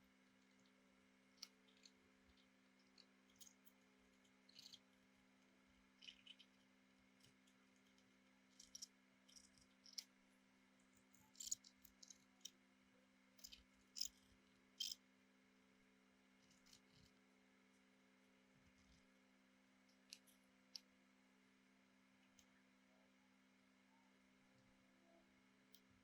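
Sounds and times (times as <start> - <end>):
low electrical hum: 0.0 - 26.0
small objects clicking and tapping: 1.4 - 4.8, 6.0 - 10.1, 11.0 - 12.6, 13.4 - 14.2.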